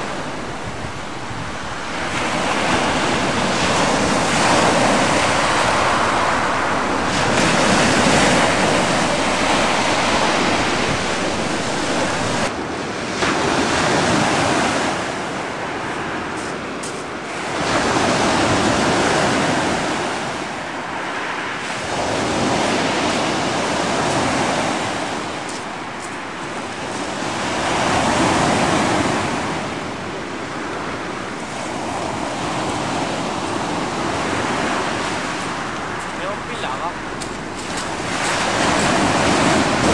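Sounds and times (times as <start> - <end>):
sea waves washing: 0.0 - 39.9
wind buffeting microphone: 0.0 - 39.9.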